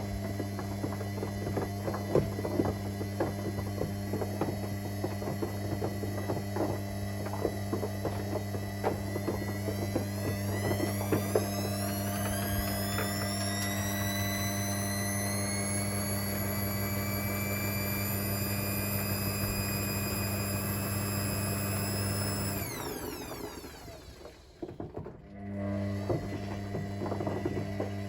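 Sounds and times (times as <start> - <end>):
drain pump hum: 0.0 - 28.0
washing machine motor whine: 0.0 - 28.0.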